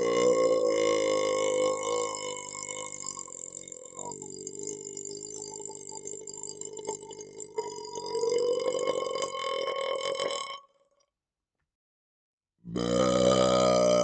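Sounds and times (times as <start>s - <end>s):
man burping: 0.0s - 10.6s, 12.7s - 14.0s.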